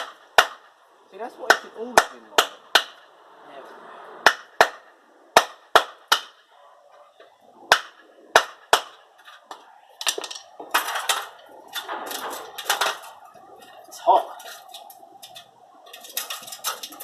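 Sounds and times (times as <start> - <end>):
metal scraping and clattering: 9.2 - 17.0.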